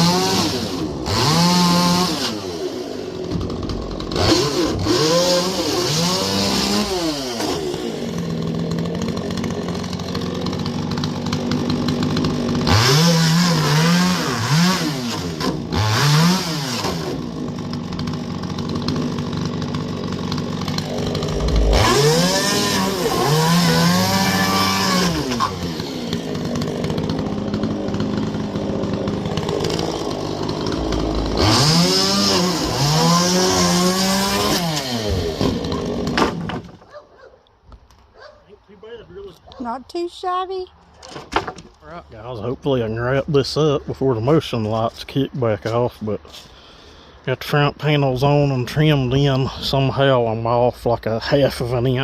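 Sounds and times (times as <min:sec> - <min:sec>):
chainsaw revving and idling: 0:00.0 - 0:36.7, 0:51.0 - 0:52.0.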